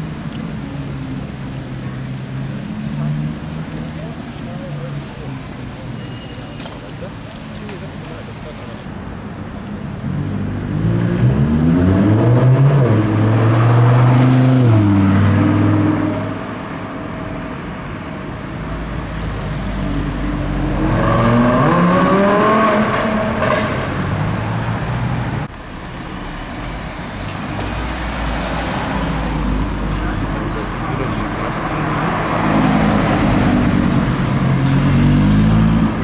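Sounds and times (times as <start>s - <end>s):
low traffic rumble: 0.0s - 36.0s
sports car engine accelerating: 9.9s - 17.1s, 19.4s - 25.5s, 26.2s - 36.0s.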